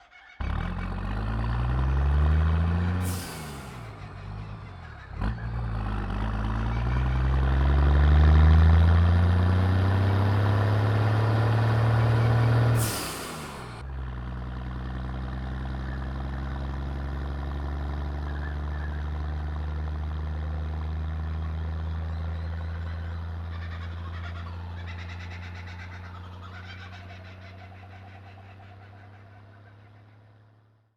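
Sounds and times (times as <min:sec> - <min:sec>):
engine revving: 0:00.4 - 0:28.2
kookaburras calling: 0:22.6 - 0:30.3.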